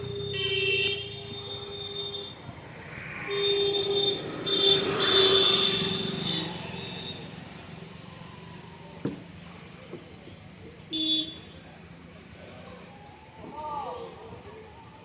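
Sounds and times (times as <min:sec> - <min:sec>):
vehicle horn honking: 0:00.0 - 0:02.4, 0:03.3 - 0:07.2, 0:10.9 - 0:11.6
passing road traffic: 0:00.0 - 0:15.0.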